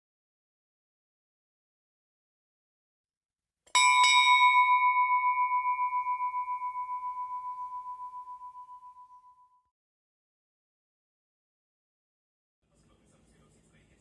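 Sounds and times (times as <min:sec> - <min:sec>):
small bell ringing: 0:03.7 - 0:09.6.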